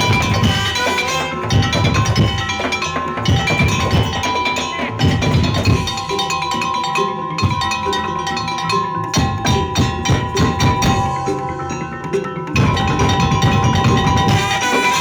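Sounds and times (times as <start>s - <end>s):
drum beats: 0.0s - 15.0s
wood block and metal percussion: 0.0s - 15.0s.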